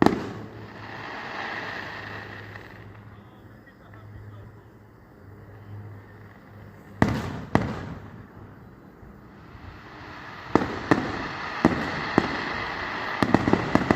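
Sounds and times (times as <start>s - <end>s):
fireworks bangs: 0.0s - 3.2s, 7.0s - 8.6s, 9.3s - 13.9s
fireworks crackle: 0.0s - 4.1s, 6.1s - 8.4s, 9.2s - 13.9s.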